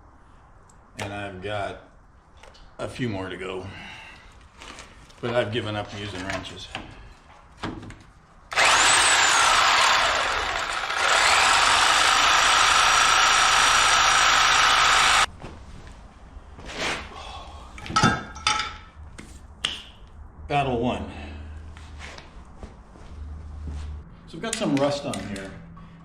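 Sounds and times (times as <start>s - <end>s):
angle grinder cutting bolt: 8.5s - 15.3s.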